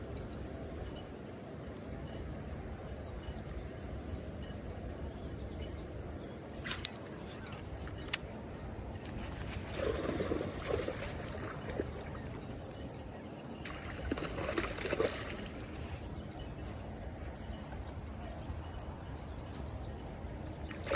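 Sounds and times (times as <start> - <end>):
water splashing and sloshing: 8.9 - 20.9.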